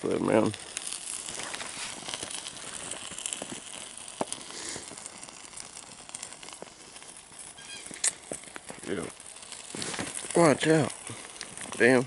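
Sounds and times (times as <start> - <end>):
fire crackling: 0.0 - 12.0
fire hissing: 0.0 - 12.0
small pops: 0.3 - 12.0.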